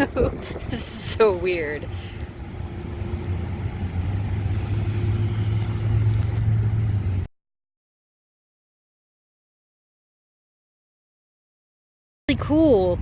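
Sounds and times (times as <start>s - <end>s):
vehicle engine rumbling: 0.0s - 7.3s.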